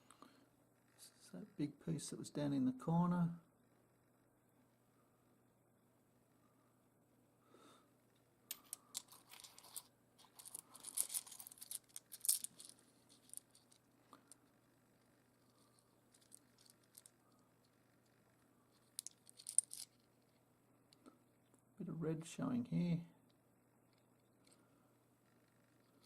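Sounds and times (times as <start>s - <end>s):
stones clicking and scraping: 8.5s - 20.4s.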